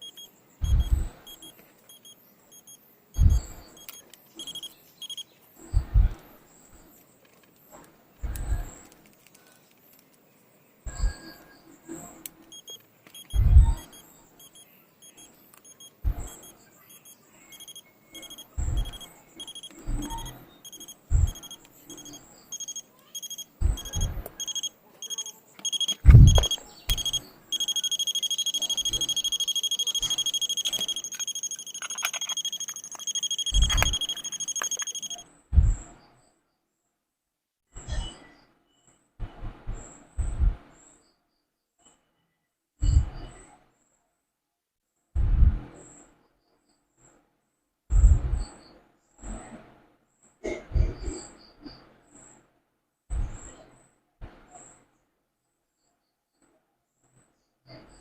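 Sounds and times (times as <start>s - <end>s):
alarm clock beeping: 0.0s - 6.0s, 12.5s - 35.2s.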